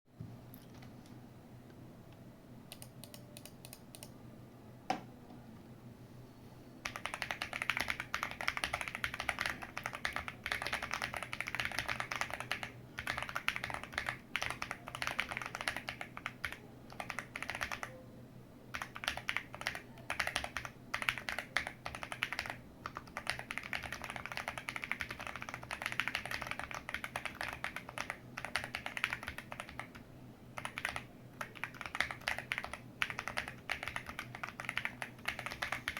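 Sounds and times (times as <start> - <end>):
typing on mechanical keyboard: 6.8 - 18.0, 18.7 - 30.0, 30.6 - 35.9.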